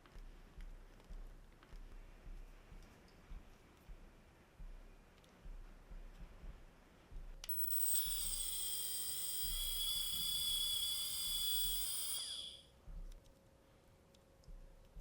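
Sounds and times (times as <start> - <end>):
small fan motor whine: 7.4 - 13.2.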